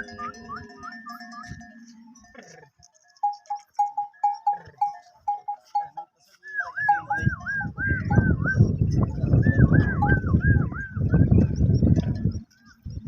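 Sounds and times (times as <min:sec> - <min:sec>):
person whistling calls: 0:06.4 - 0:08.7, 0:09.3 - 0:11.2.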